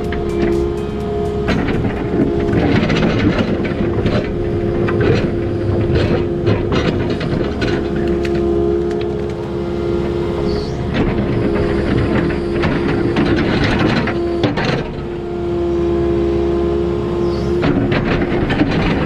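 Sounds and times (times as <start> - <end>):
metal clanks and rattles: 0.0 - 9.6
diesel engine and hydraulic hum: 0.0 - 19.0.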